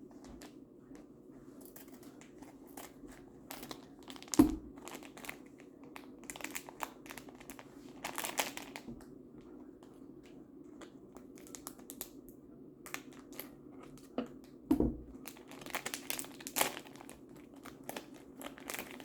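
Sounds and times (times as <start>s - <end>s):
packaging crinkling and tearing: 3.5s - 8.9s, 15.2s - 19.0s.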